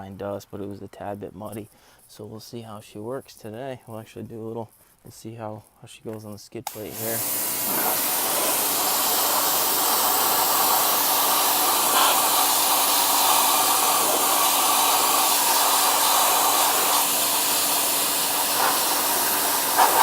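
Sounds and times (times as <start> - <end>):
pressure washer spray hiss: 6.7 - 20.0.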